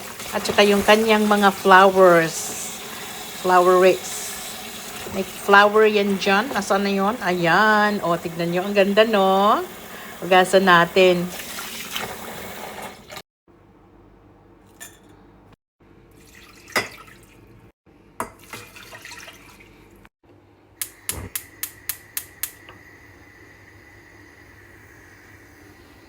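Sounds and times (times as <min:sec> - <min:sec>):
water running: 0:00.0 - 0:13.2, 0:16.2 - 0:17.6, 0:18.3 - 0:20.1.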